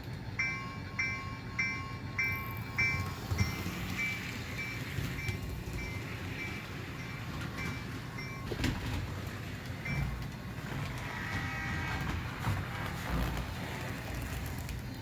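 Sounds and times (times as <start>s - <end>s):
model locomotive diesel rumble: 0.0s - 15.0s
short high chiming tones: 0.4s - 8.6s.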